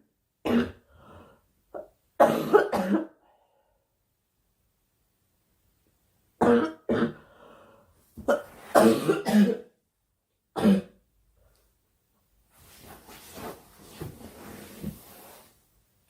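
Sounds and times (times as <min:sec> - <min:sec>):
girl coughing: 0:02.2 - 0:03.2, 0:08.3 - 0:09.7.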